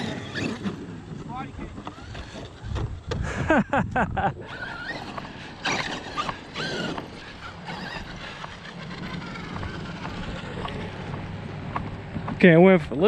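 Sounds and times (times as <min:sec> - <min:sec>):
electric motor whining: 0:00.0 - 0:03.2, 0:04.4 - 0:12.4
truck running over dirt: 0:00.0 - 0:03.7, 0:04.4 - 0:13.0.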